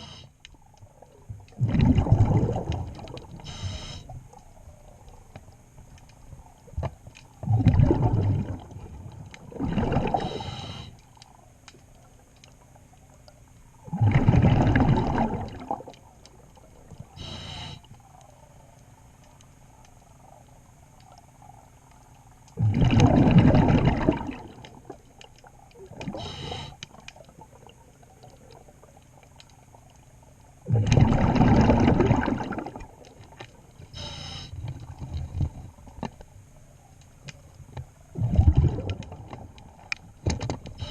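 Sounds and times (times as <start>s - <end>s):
exhaled bubbles underwater: 0.0s - 5.3s, 6.2s - 10.9s, 13.8s - 18.2s, 22.6s - 29.9s, 30.5s - 36.2s, 37.9s - 40.9s
diver breathing: 3.4s - 4.1s, 10.1s - 11.0s, 17.2s - 17.9s, 26.2s - 26.8s.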